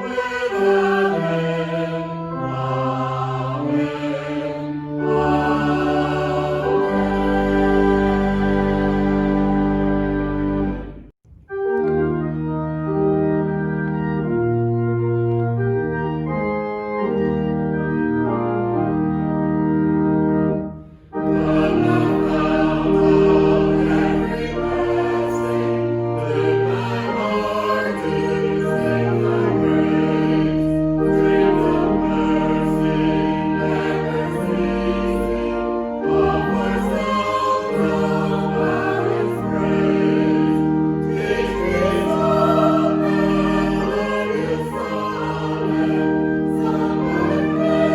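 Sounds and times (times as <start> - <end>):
choir singing a hymn: 0.0 - 11.1, 21.0 - 47.9
organ playing held chords: 0.0 - 47.9.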